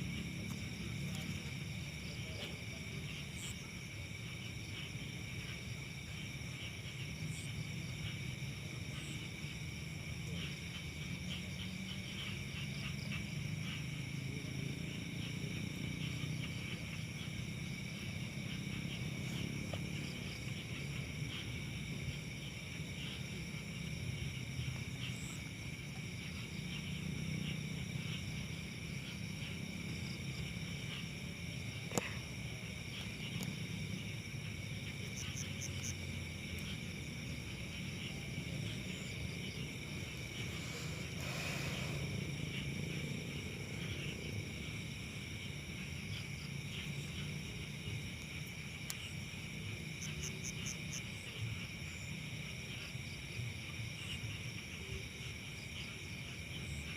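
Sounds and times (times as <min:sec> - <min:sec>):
crickets and insects trilling: 0:00.0 - 0:56.9.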